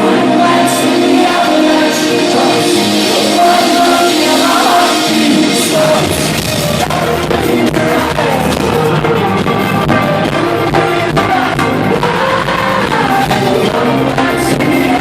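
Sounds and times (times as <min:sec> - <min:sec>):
drum kit beat: 0:00.0 - 0:15.0
person singing: 0:00.0 - 0:15.0
rock music: 0:00.0 - 0:15.0.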